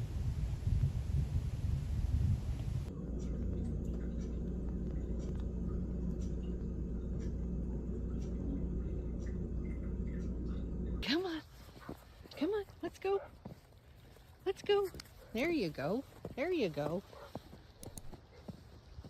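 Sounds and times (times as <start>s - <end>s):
low engine hum: 0.0s - 19.0s.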